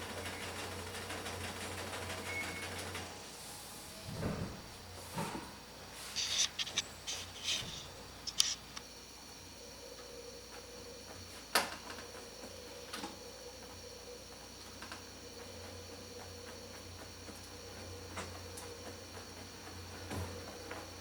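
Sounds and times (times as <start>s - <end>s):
hardware clicks and rustling: 6.2s - 8.8s.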